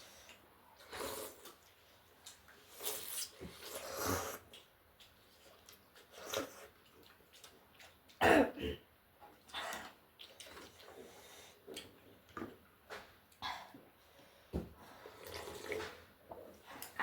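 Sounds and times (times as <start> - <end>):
person clearing throat: 8.2 - 8.8.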